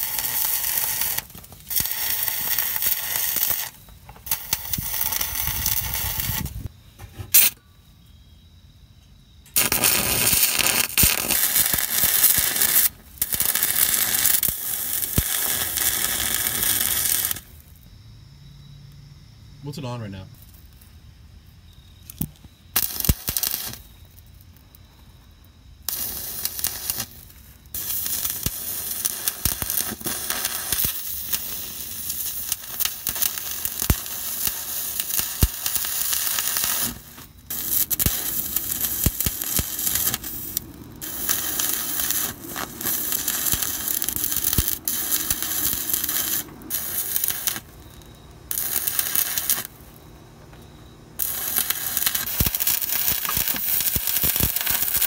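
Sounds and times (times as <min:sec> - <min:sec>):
stick welder arc crackling: 0:00.0 - 0:06.7, 0:07.3 - 0:07.6, 0:09.5 - 0:17.8, 0:22.0 - 0:24.3, 0:25.9 - 0:50.0, 0:51.2 - 0:55.0.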